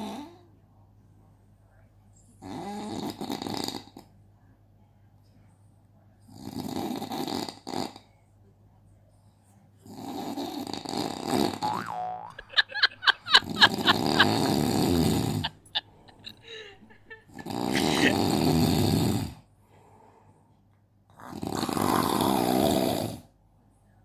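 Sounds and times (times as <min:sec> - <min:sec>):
person snoring: 0:12.5 - 0:19.3, 0:21.2 - 0:23.2.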